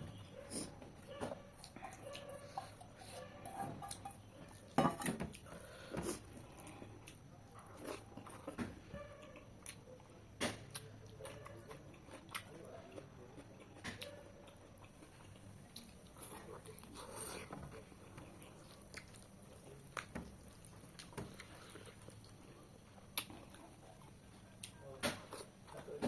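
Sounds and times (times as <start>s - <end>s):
chewing and mouth smacks: 10.7s - 22.4s, 23.1s - 26.0s.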